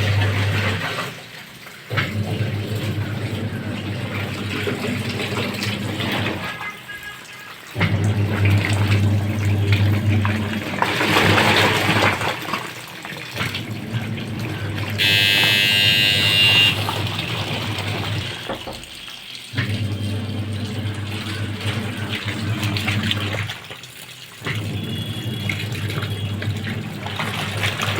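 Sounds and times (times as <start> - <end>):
water rushing into washing machine: 0.0 - 27.9
high electronic tone: 15.0 - 17.0.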